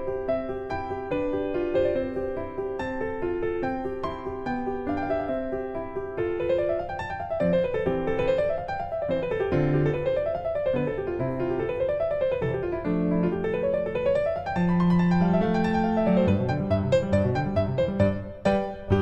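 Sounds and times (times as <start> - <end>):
piano music: 0.0 - 19.0.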